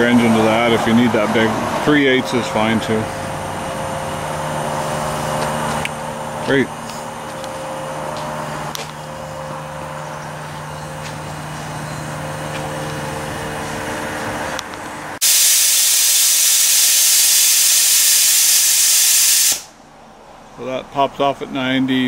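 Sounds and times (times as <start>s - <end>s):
steady hum with tones: 0.0s - 22.0s
steam venting hiss: 15.2s - 19.8s.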